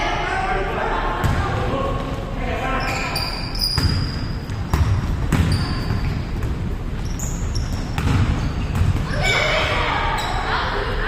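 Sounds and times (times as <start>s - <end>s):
sneakers squeaking on floor: 2.7s - 10.6s
basketball bouncing: 3.8s - 6.7s, 7.6s - 9.2s.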